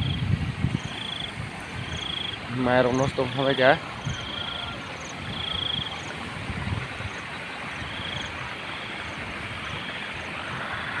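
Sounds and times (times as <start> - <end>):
insects trilling: 0.0 - 6.1
floodwater rushing: 0.0 - 11.0.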